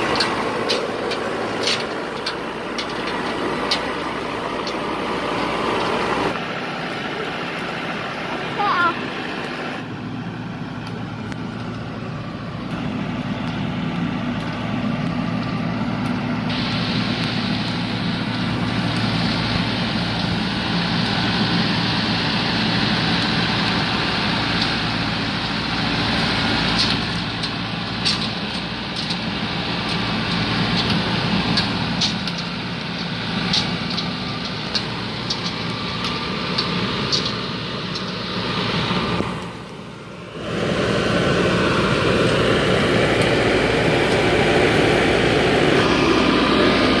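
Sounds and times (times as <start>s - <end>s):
clicks and clanks: 0.0s - 4.0s, 26.7s - 29.2s, 29.8s - 38.3s
combine harvester engine running: 0.0s - 47.0s
rushing hiss: 16.4s - 25.0s.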